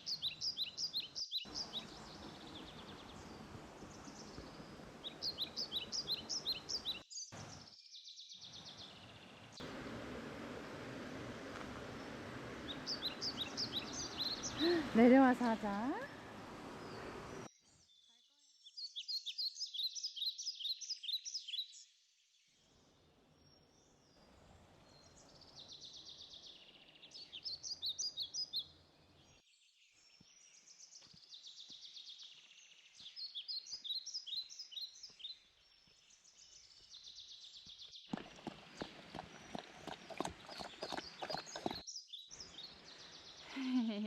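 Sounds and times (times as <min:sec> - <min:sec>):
birds chirping: 0:00.0 - 0:18.0, 0:23.5 - 0:44.0
footsteps on a trail: 0:11.2 - 0:14.8, 0:38.1 - 0:41.8.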